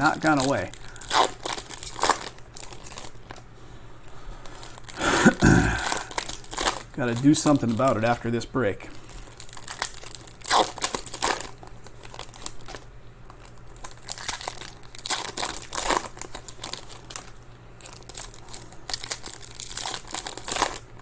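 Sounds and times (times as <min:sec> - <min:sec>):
foil wrappers tearing and crinkling: 0:00.0 - 0:03.5, 0:04.1 - 0:21.0.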